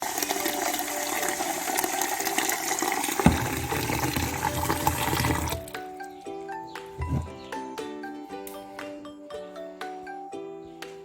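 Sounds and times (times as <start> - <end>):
running water: 0.0 - 5.8
music: 0.0 - 11.0
sudden knock: 3.2 - 3.8, 7.0 - 7.4.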